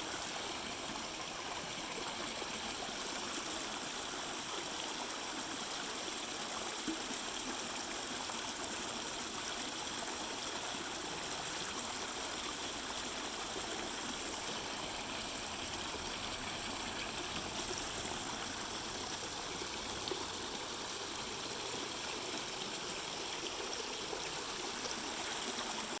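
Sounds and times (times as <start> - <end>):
fountain water splashing: 9.7 - 26.0.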